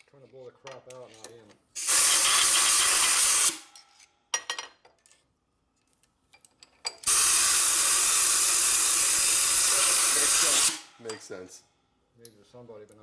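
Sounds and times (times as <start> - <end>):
compressed air blow gun hissing: 1.8 - 3.7, 7.1 - 10.9.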